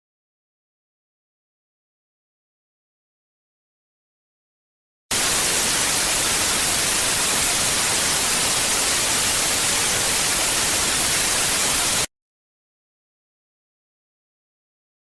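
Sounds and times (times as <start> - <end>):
static hiss: 5.1 - 12.1.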